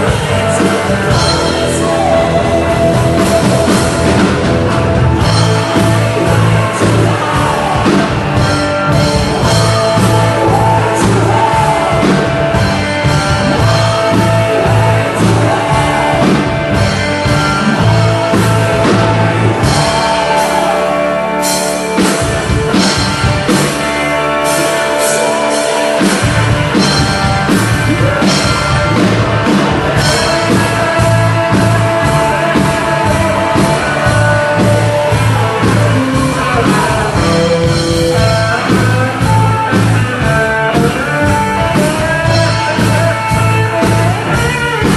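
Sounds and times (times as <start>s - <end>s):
singer: 0.0s - 22.8s, 24.4s - 44.9s
rock band playing: 0.0s - 44.9s.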